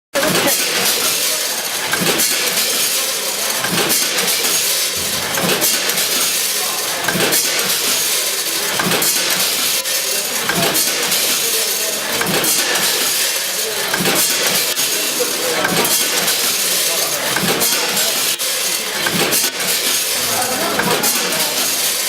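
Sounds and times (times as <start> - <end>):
packaging machine hissing and clicking: 0.2 - 22.0
heavy machine knock: 3.6 - 6.4, 10.4 - 22.0.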